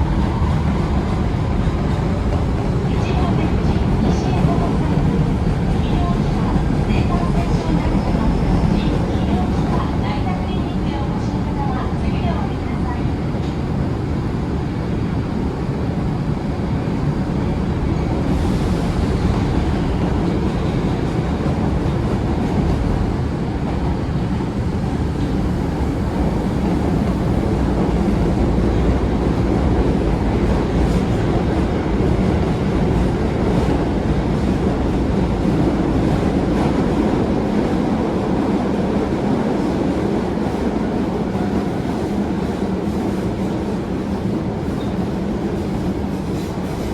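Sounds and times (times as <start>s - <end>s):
subway train rumbling in tunnel: 0.0s - 46.9s.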